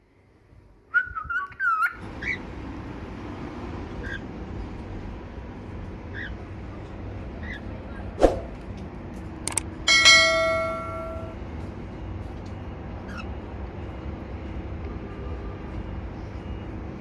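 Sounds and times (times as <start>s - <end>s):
low background hum: 0.1s - 17.0s
clicks: 9.5s - 9.7s
metallic bell ring: 9.9s - 11.4s.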